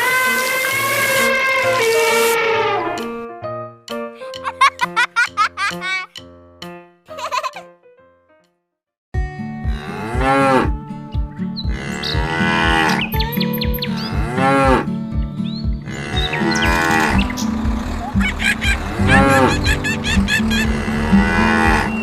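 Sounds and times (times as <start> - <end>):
children's music with beat: 2.9 - 7.7, 16.7 - 21.3
cartoon cow mooing: 15.9 - 17.2, 18.9 - 19.8, 20.5 - 22.0.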